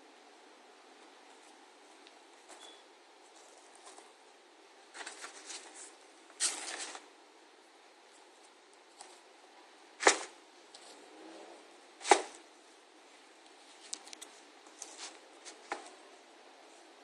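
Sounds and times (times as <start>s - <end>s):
light clicks and rustling: 13.4s - 16.0s.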